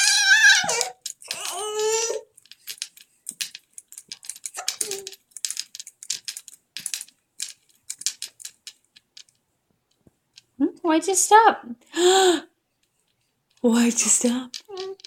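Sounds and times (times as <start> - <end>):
baby bouncer clicking and jingling: 0.6 - 2.4.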